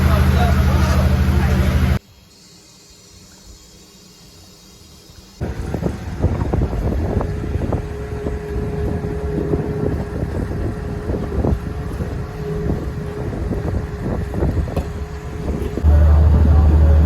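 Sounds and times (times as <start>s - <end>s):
boat engine droning: 0.0s - 2.0s, 5.4s - 17.0s
wind buffeting microphone: 5.4s - 17.0s.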